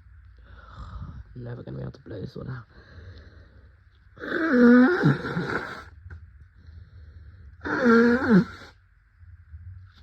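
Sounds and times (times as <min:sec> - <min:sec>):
congested nose blowing: 0:07.6 - 0:08.7.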